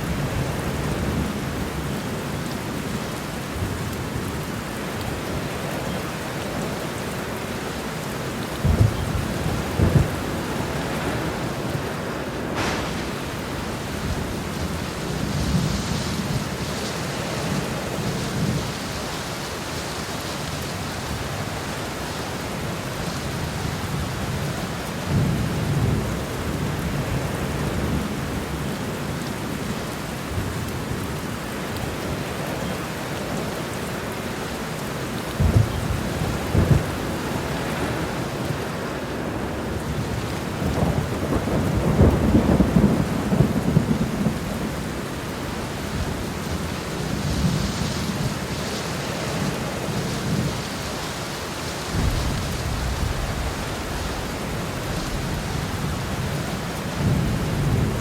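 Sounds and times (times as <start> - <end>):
heavy rain falling: 0.0 - 58.0
thunder rumbling: 8.5 - 19.0, 35.4 - 58.0
sharp thunder cracks: 12.5 - 15.7, 51.9 - 56.4.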